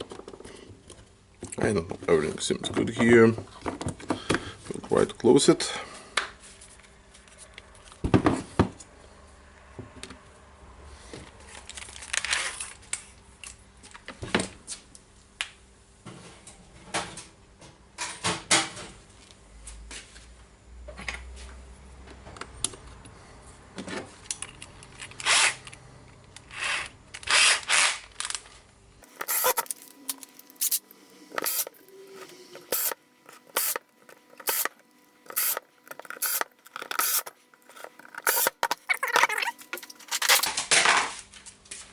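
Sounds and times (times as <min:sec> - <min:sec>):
plastic parts clicking and rattling: 0:29.0 - 0:40.6.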